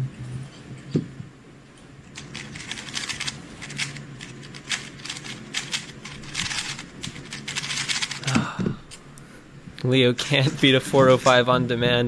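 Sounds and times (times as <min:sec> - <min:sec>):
puzzle cube clicking rapidly: 0:02.2 - 0:08.4.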